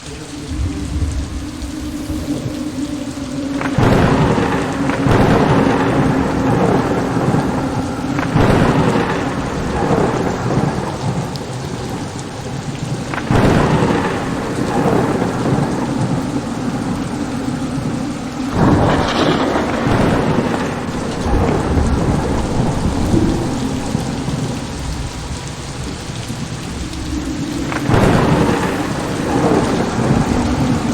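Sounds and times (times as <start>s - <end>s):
heavy rain: 0.0s - 30.9s
thunder rolling: 0.0s - 30.9s.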